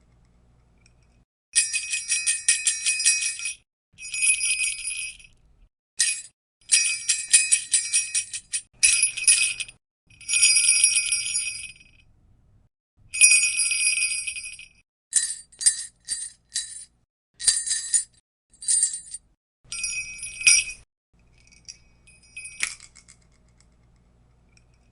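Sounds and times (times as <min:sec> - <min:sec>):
sleigh bells jingling: 0:01.6 - 0:05.3, 0:06.0 - 0:11.9, 0:13.1 - 0:23.1.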